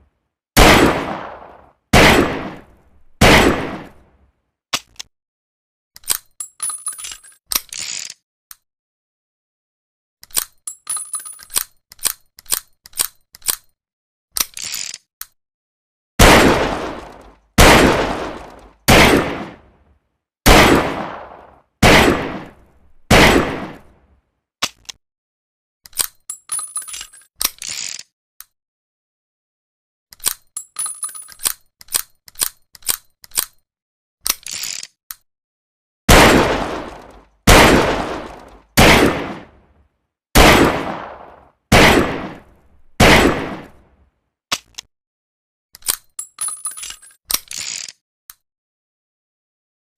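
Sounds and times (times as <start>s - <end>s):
revolver gunshots: 0.6s - 4.0s, 16.2s - 19.6s, 20.5s - 23.9s, 36.1s - 39.5s, 40.4s - 43.8s.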